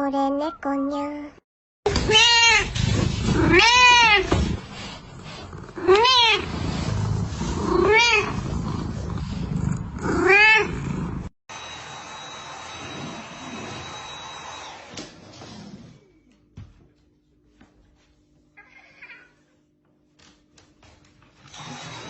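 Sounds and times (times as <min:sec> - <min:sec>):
cat meowing: 0:05.8 - 0:06.5, 0:07.7 - 0:08.4.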